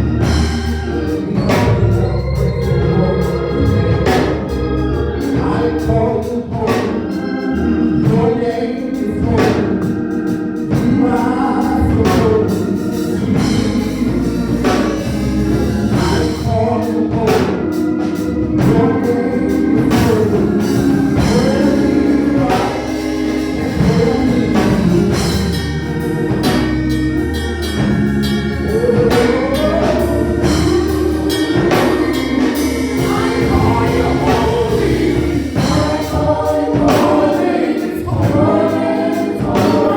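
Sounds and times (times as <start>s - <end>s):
organ playing: 0.0s - 39.9s
regular beat: 0.0s - 39.9s
voices singing: 0.0s - 39.9s.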